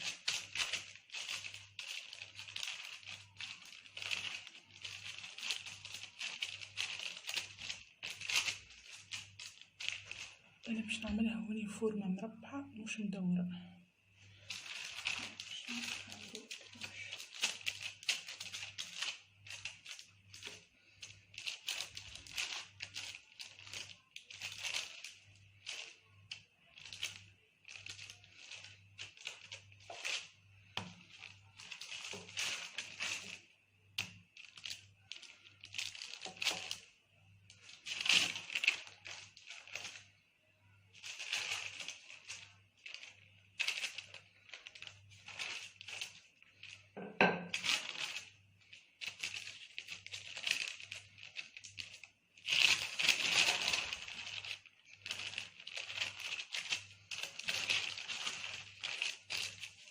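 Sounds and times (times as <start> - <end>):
dough and pan handling noises: 41.1 - 48.4.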